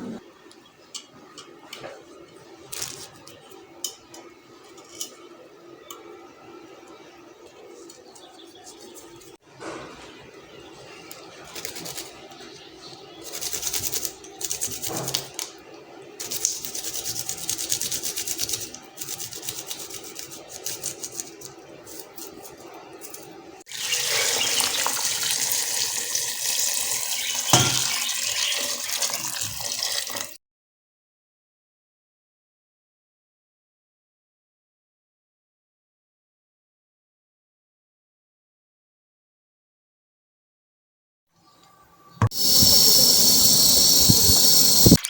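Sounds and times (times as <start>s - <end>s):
tap water running into sink: 23.7s - 30.4s, 42.3s - 45.0s.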